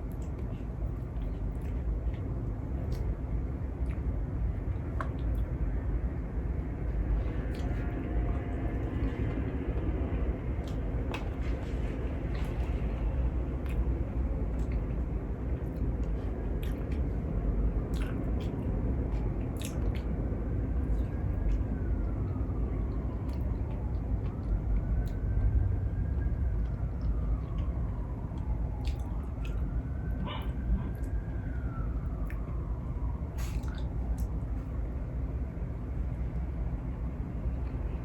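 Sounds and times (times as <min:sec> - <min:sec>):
chewing and biting seafood: 0:00.0 - 0:05.7, 0:07.3 - 0:09.9, 0:10.5 - 0:11.6, 0:12.2 - 0:17.1, 0:17.8 - 0:22.4, 0:26.2 - 0:31.2, 0:33.4 - 0:34.7
low rumble: 0:00.0 - 0:38.0
wet clicks and smacks: 0:00.1 - 0:03.2, 0:07.5 - 0:07.9, 0:10.6 - 0:11.5, 0:12.2 - 0:12.8, 0:13.6 - 0:15.0, 0:15.6 - 0:17.1, 0:17.8 - 0:20.1, 0:20.9 - 0:32.6, 0:33.4 - 0:34.7
distant siren: 0:00.7 - 0:38.0.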